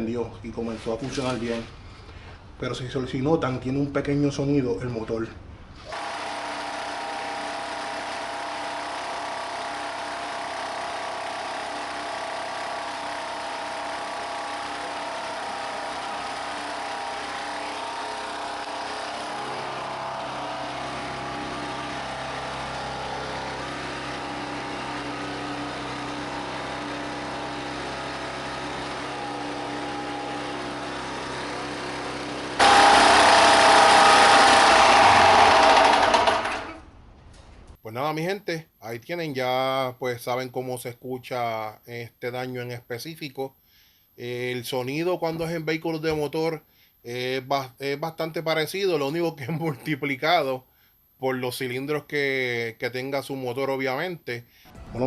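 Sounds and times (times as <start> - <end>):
generator engine running: 5.9 - 36.7.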